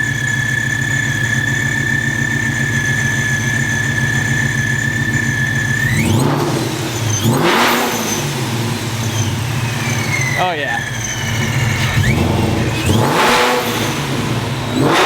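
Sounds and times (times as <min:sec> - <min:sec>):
car engine idling and revving: 0:00.0 - 0:15.0
high-pitched whine: 0:09.0 - 0:15.0.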